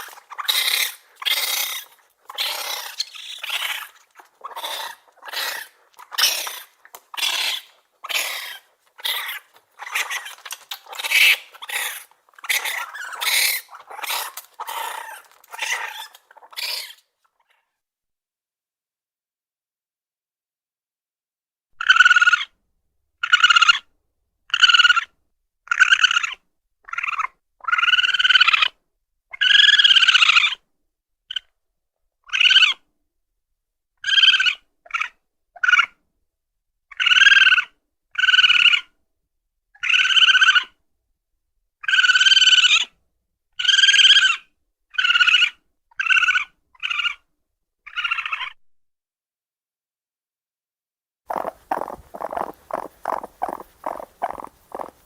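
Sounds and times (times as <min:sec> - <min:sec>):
raccoon chittering: 0:00.0 - 0:17.0, 0:51.3 - 0:55.0.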